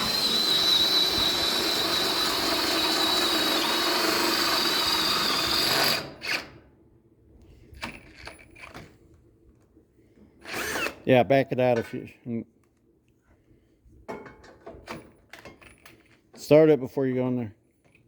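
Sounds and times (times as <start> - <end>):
cordless drill whining: 0.0 - 6.6, 10.4 - 11.0.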